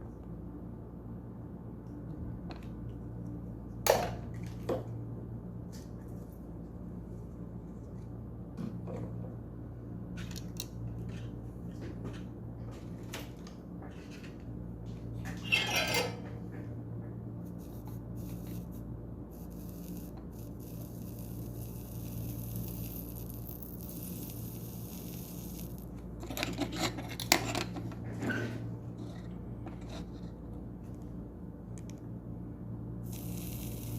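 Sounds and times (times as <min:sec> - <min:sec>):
low electrical hum: 0:00.0 - 0:33.9
metal tools scraping and clicking: 0:15.3 - 0:16.4, 0:26.2 - 0:27.9.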